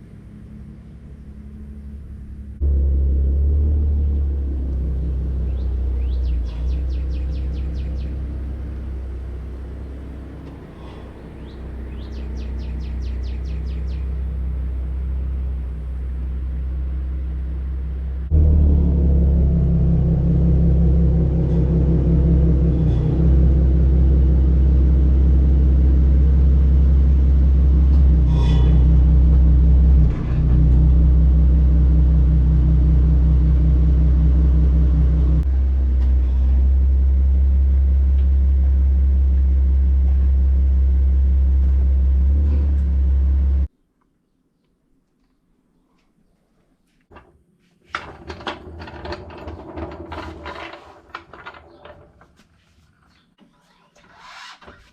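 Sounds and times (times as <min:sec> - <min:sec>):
car engine running: 0:00.0 - 0:43.7
road noise rumble: 0:00.0 - 0:43.8.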